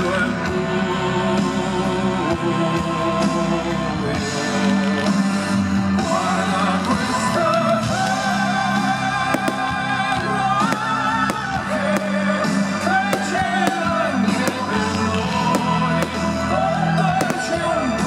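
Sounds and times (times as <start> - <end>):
pop music with singing: 0.0 - 18.0
fireworks cracking: 9.3 - 18.0.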